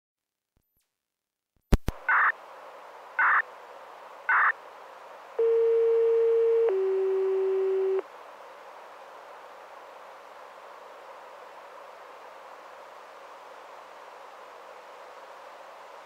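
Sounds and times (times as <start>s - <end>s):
radio hiss: 1.8s - 16.0s
long signal tones: 3.2s - 3.4s, 4.3s - 4.6s, 5.4s - 8.0s.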